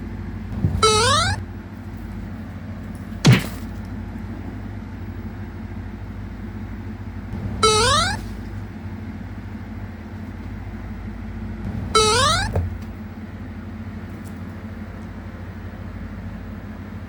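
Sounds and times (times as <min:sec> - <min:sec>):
cat meowing: 0:00.8 - 0:01.4, 0:07.6 - 0:08.3, 0:12.0 - 0:12.6.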